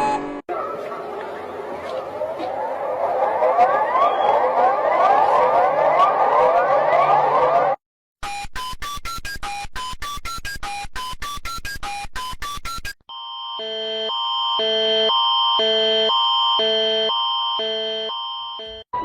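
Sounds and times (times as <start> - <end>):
pulsing alarm tone: 2.6 - 7.8, 13.1 - 18.9.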